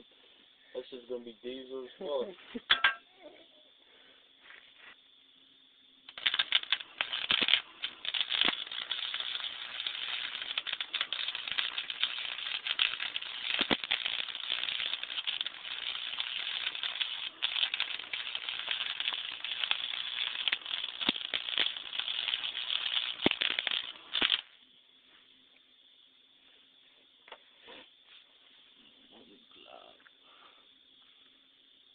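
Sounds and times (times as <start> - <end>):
welding arc crackling: 6.1 - 24.6.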